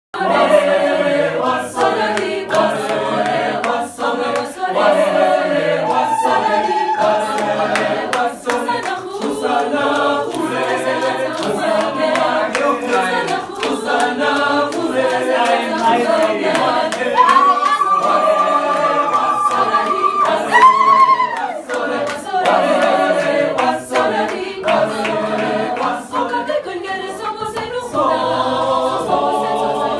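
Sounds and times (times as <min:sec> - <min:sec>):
choir singing a cappella: 0:00.2 - 0:29.9.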